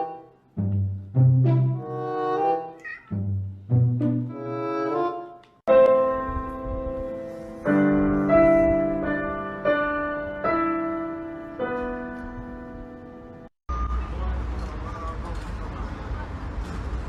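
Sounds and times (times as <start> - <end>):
slow piano chords: 5.7 - 13.5.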